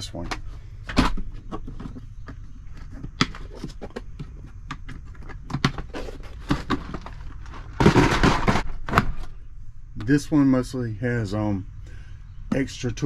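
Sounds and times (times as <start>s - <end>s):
plastic cases clicking and knocking: 0.2s - 9.3s.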